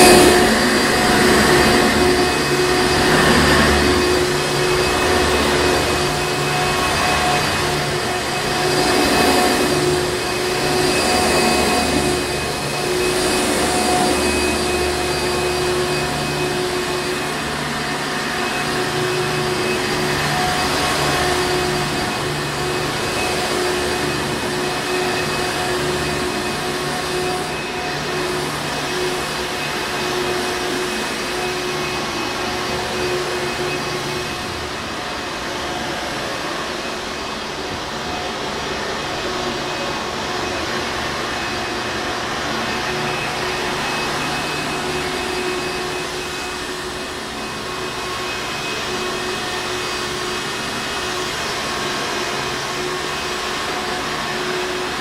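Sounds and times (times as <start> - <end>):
vacuum cleaner running: 0.0 - 55.0.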